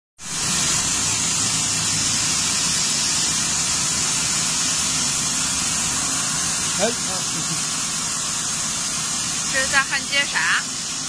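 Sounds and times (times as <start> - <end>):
hiss of gas flow: 0.2 - 11.0
low machine hum: 0.8 - 11.0.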